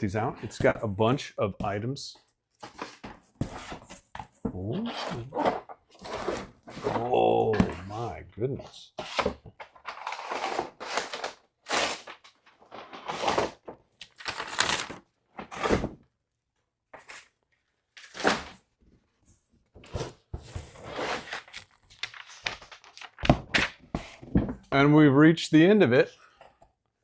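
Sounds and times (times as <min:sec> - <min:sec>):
cardboard and paper rustling: 0:00.4 - 0:01.0, 0:02.6 - 0:08.2, 0:09.0 - 0:15.9, 0:19.8 - 0:24.6.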